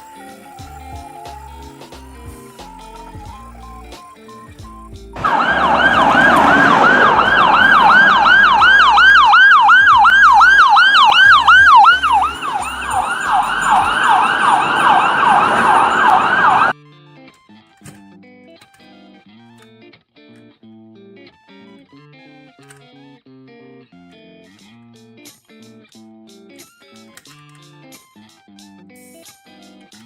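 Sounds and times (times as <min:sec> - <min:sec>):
ambulance siren yelping: 0:00.0 - 0:16.8.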